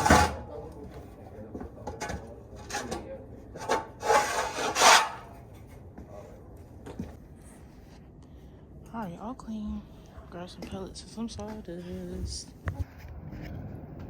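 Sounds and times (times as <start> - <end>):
shovel scraping stall bedding: 0.0 - 0.5, 3.6 - 5.4.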